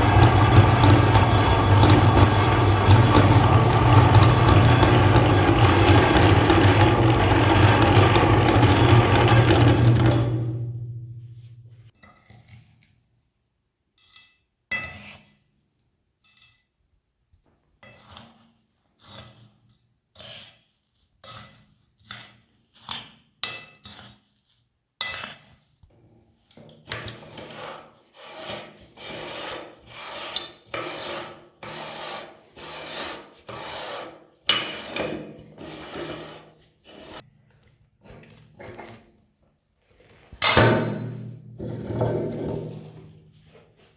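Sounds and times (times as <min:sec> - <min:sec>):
meat grinder crushing candy: 0:00.0 - 0:10.3.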